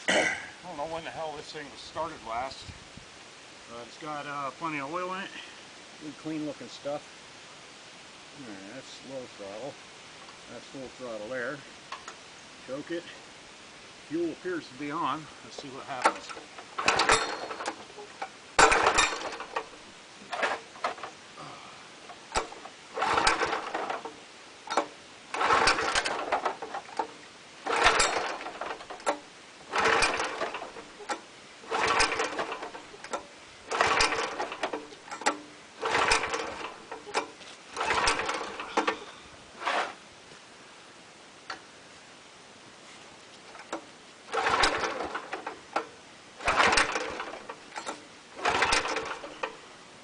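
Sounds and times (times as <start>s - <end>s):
small engine pull-started: 15.5s - 21.2s, 22.0s - 40.0s, 43.5s - 49.6s.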